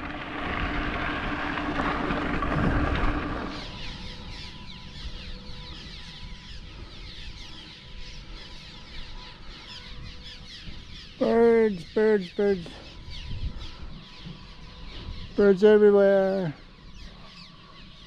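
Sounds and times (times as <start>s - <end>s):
wind rumbling on microphone: 0.0s - 18.0s
flock of birds calling: 1.6s - 18.0s.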